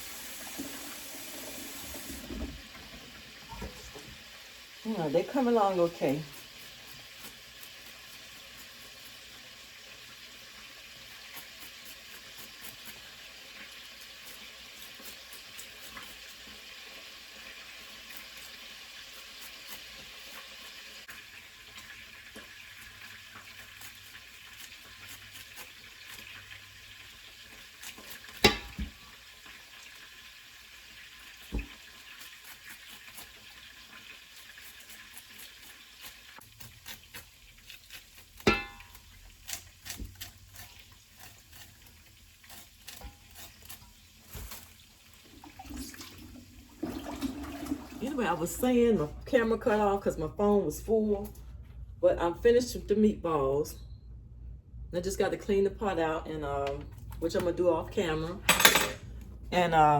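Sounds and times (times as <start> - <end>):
meatballs sizzling in a pan: 4.1 - 4.8, 7.4 - 12.1, 16.4 - 24.5, 25.2 - 36.5, 38.4 - 39.0
utensil knocking on pan: 28.4 - 29.0.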